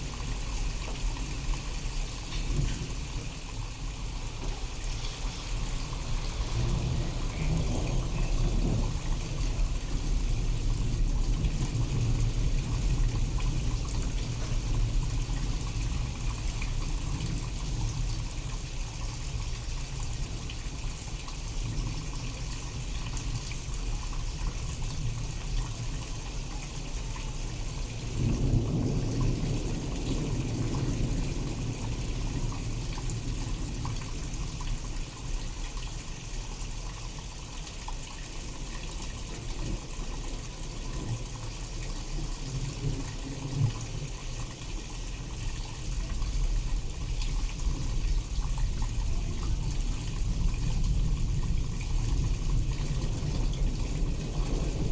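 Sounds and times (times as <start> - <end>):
steady rain: 0.0 - 54.9
thunder rumbling: 2.5 - 18.2, 28.0 - 34.1, 45.1 - 54.9.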